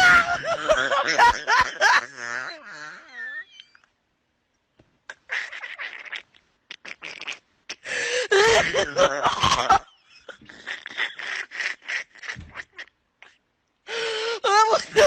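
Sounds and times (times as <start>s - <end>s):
person crying out: 14.4s - 15.0s.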